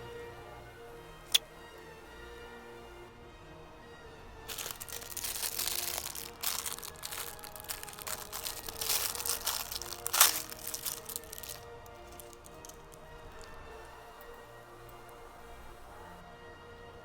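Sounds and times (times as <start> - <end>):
quiet background music: 0.0 - 17.0
plastic packaging crinkling: 4.5 - 15.2.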